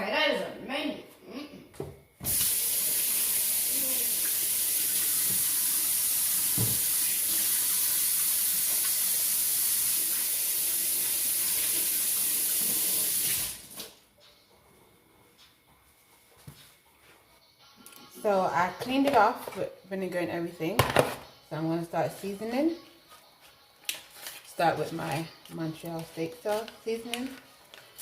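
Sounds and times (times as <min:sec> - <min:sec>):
tap running into a sink: 0:04.9 - 0:05.7, 0:06.4 - 0:07.1.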